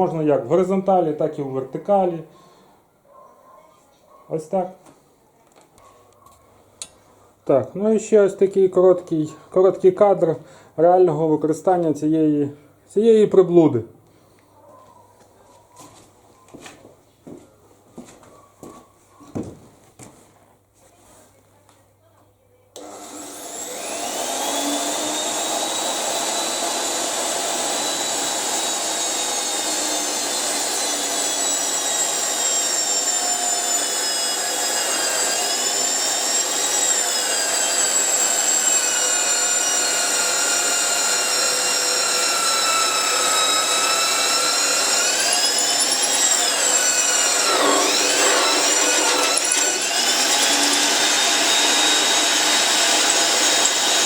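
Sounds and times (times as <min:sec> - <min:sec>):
magnetic drill drilling into steel: 0:22.8 - 0:54.0.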